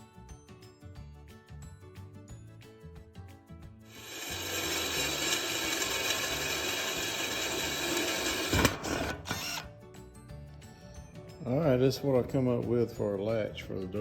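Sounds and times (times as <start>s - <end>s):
power tool grinding steel: 3.9s - 9.6s.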